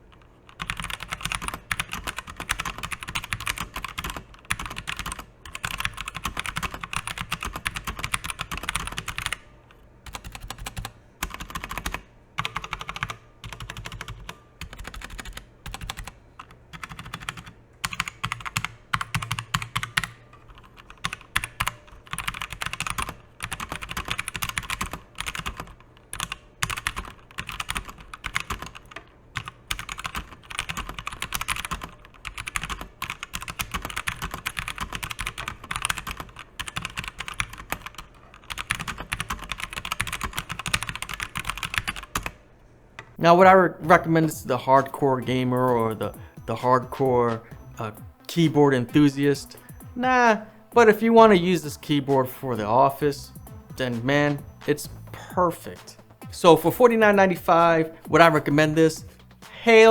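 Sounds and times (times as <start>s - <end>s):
mechanical keyboard typing: 0.0s - 42.4s.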